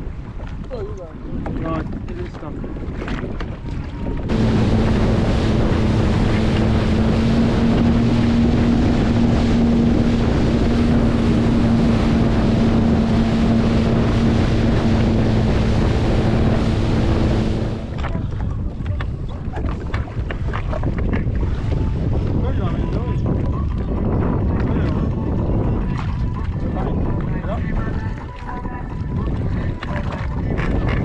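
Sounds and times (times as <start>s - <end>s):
wind and water rushing on microphone: 0.0s - 31.0s
jet ski engine drone: 4.3s - 18.4s.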